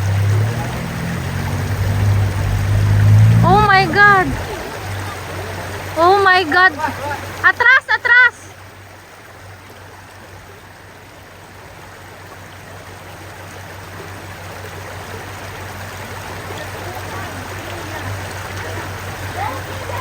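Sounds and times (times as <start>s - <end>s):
steady low hum: 0.0s - 6.0s
rushing stream water: 0.0s - 20.0s.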